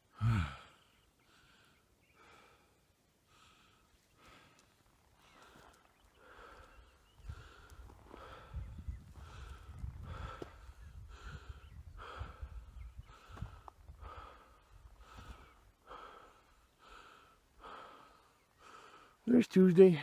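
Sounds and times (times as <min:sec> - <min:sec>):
man breathing hard: 0:00.0 - 0:19.2.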